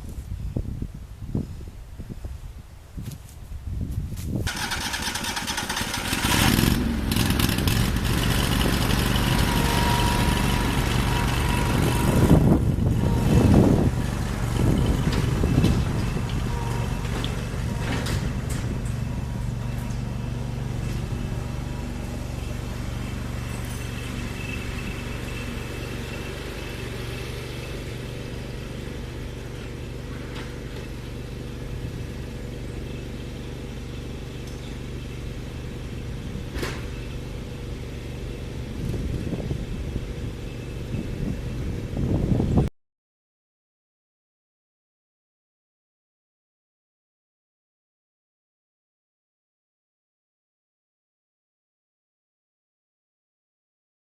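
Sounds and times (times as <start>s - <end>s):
tractor engine running: 4.4s - 42.6s.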